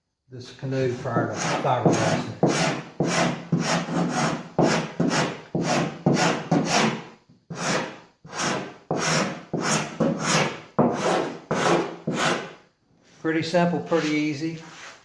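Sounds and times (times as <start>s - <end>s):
hand tool scraping wood: 0.8s - 12.6s.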